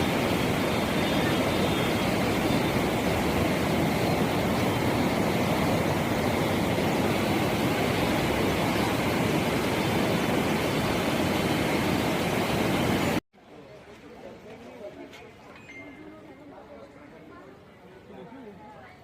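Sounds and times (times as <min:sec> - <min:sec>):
river floodwater rushing: 0:00.0 - 0:13.2.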